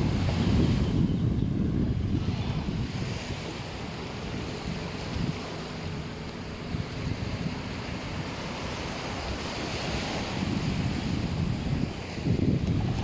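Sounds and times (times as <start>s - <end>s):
sea waves washing onto beach: 0.0s - 13.0s
wind rumbling on microphone: 0.0s - 13.0s.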